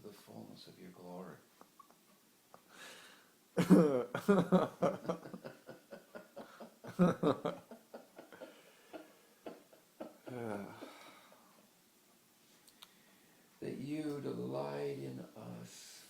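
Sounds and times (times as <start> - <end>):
people laughing: 3.6 - 11.1.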